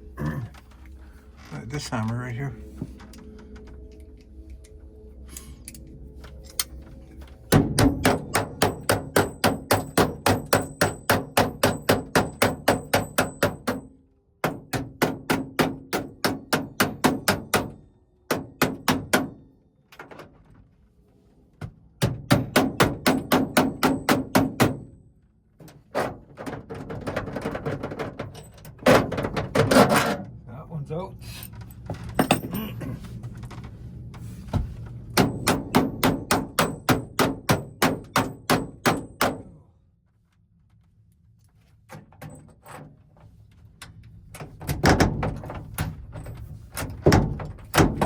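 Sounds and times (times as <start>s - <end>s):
hammer striking metal door: 7.5s - 19.5s, 22.0s - 25.0s, 35.1s - 39.6s, 47.0s - 48.0s.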